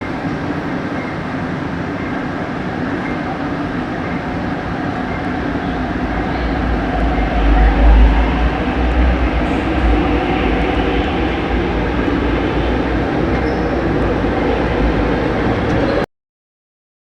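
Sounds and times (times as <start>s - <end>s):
subway train running: 0.0s - 16.1s
faint hum: 1.8s - 16.1s
low rumble: 4.6s - 16.1s.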